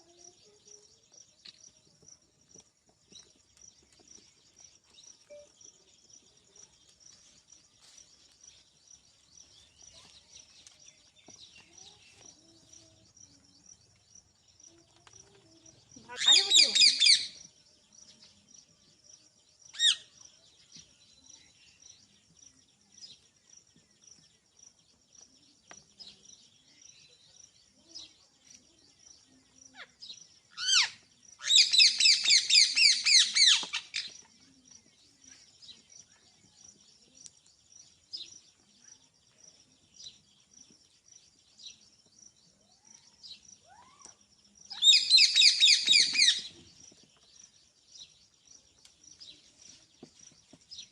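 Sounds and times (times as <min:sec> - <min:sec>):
soft bird chirps: 0:00.0 - 0:50.9.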